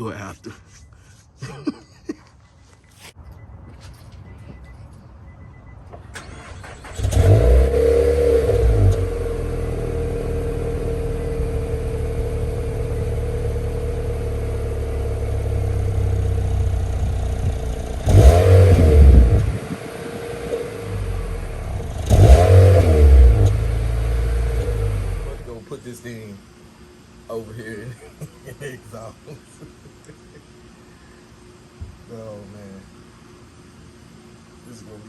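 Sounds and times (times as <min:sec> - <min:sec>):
car engine idling and revving: 0:03.3 - 0:25.6
car engine cranking: 0:05.4 - 0:12.0, 0:15.4 - 0:25.5.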